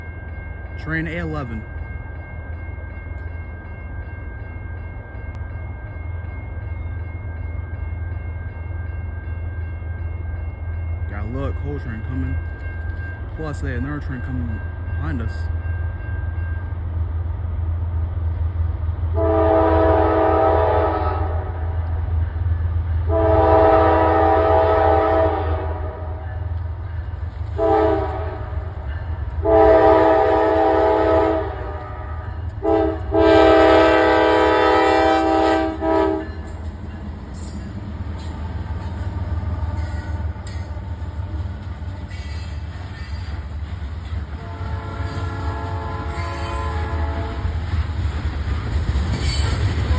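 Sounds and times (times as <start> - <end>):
low locomotive rumble: 0.0 - 49.9
locomotive horn blasts: 19.2 - 21.8, 23.1 - 26.2, 27.6 - 28.7, 29.4 - 36.4, 44.4 - 47.6
train wheels clattering on rails: 26.0 - 49.9.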